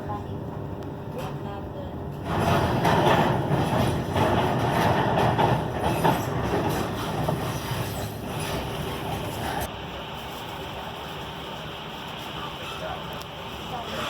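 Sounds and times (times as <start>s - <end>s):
train rumbling and rattling on track: 0.0s - 14.0s.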